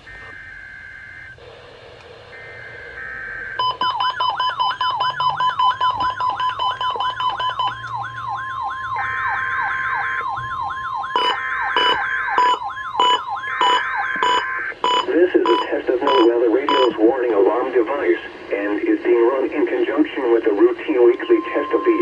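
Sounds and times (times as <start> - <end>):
steady warning alarm tone: 0.0 - 1.6, 2.2 - 22.0
warbling siren-like alert: 2.3 - 17.1, 20.6 - 22.0
buzzing data bursts: 2.3 - 22.0
choppy beeps: 3.6 - 18.6, 19.2 - 22.0.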